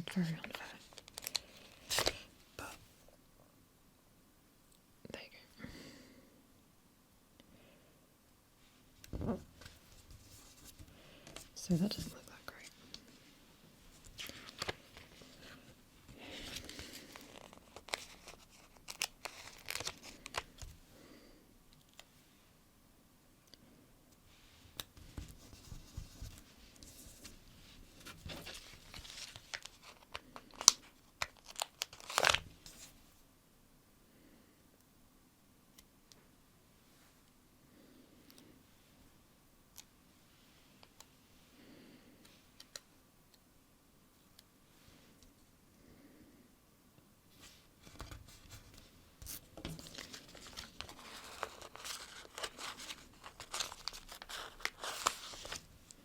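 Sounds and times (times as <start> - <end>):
paper ticks and crinkles: 0.0 - 2.3, 14.0 - 20.8, 28.0 - 32.9, 47.8 - 56.0.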